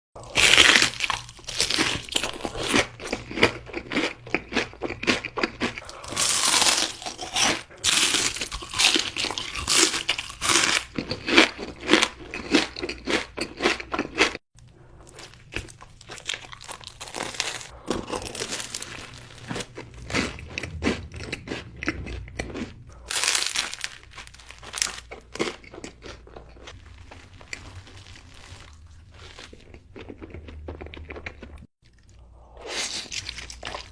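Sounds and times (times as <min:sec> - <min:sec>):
crunching and chewing food: 0:00.2 - 0:33.9
wrappers crinkling: 0:23.1 - 0:25.1.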